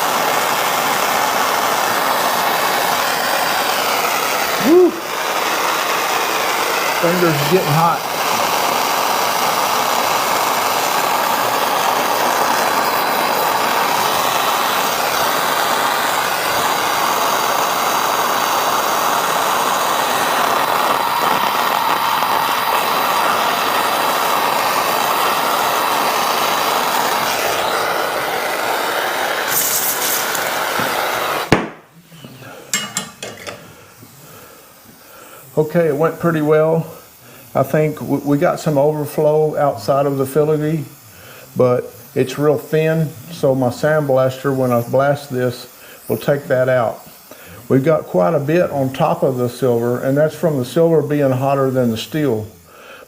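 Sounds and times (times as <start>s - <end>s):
torch shut-off click: 0.0s - 37.0s
torch flame hissing: 0.0s - 53.0s.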